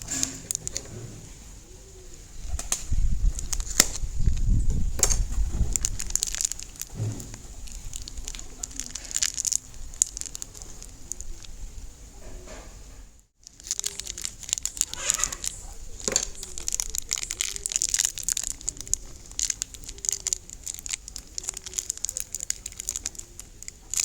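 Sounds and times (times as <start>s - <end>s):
crafting materials crinkling: 0.0s - 0.9s, 2.5s - 12.3s, 13.4s - 24.0s
short squeaks: 13.7s - 18.9s.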